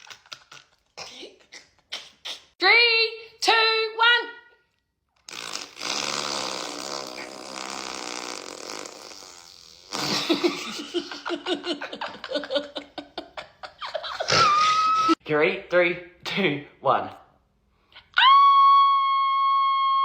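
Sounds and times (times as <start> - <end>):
person making mouth sound effects: 0.0 - 2.6, 5.2 - 10.9.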